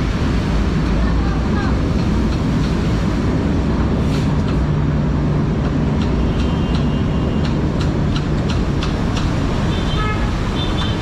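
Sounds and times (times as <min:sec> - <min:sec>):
loud rain: 0:00.0 - 0:04.4, 0:08.6 - 0:11.0.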